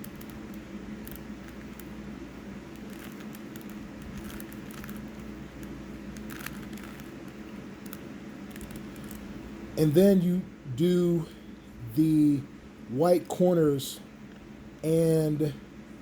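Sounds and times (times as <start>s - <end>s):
steady low hum: 0.0s - 16.0s
puzzle cube plastic clicks: 2.8s - 9.2s.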